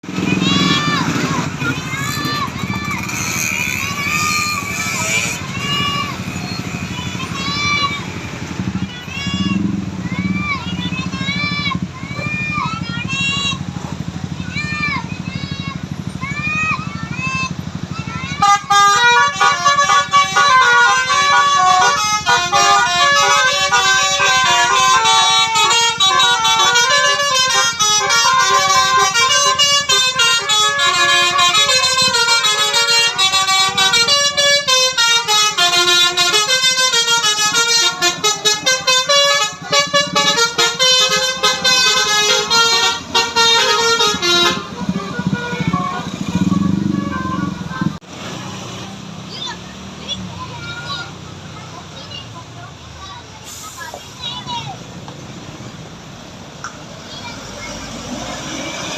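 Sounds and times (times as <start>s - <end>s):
musical air horn melody: 18.4s - 47.6s.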